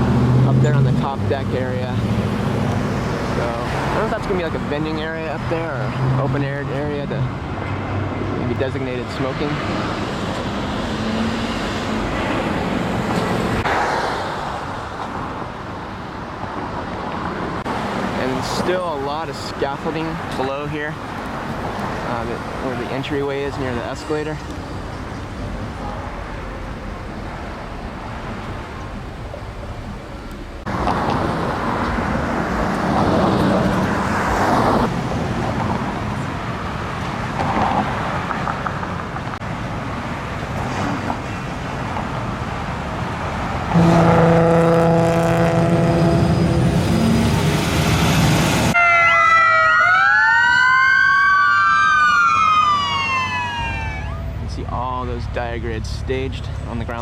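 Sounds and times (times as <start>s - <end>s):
street traffic: 0.0s - 57.0s
steady horn-like tone: 43.7s - 46.8s
emergency vehicle siren: 43.8s - 54.5s.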